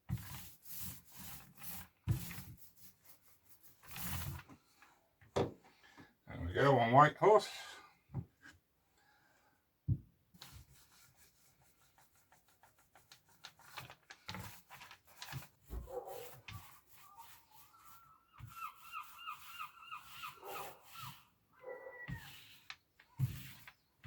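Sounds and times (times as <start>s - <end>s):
paintbrush scrubbing strokes: 0.1s - 4.8s, 10.4s - 24.0s.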